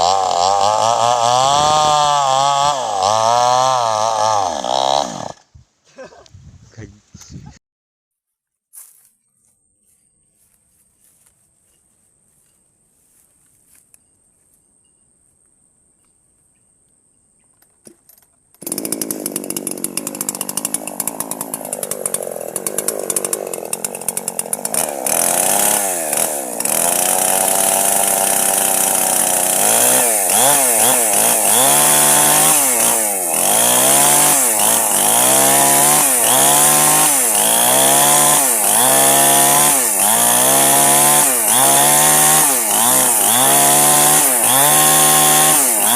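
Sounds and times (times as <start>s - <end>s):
chainsaw cutting wood: 0.0s - 5.5s, 17.8s - 45.9s.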